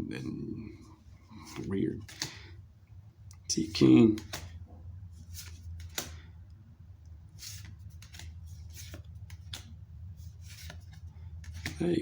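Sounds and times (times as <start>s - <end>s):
low steady hum: 0.0s - 12.0s
cards swishing and clicking: 1.4s - 2.5s, 3.6s - 4.6s, 5.2s - 6.3s, 7.3s - 12.0s.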